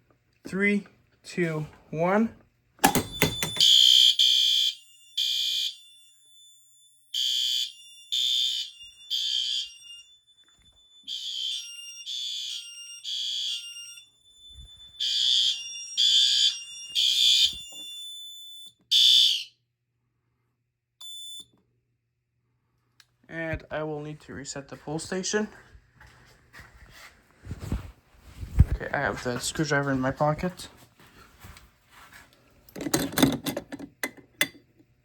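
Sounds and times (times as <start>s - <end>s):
fire alarm blasts: 2.8s - 19.6s.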